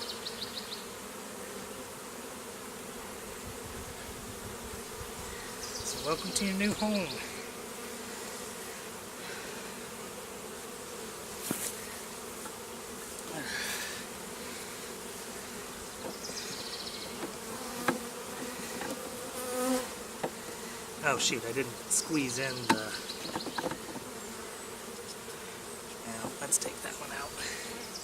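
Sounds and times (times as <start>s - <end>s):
honey bees buzzing: 0.0s - 28.0s
light knocks: 22.7s - 24.0s.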